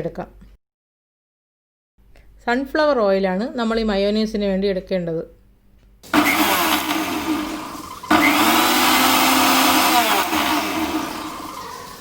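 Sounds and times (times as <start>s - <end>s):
mixer grinder motor blending: 6.0s - 12.0s.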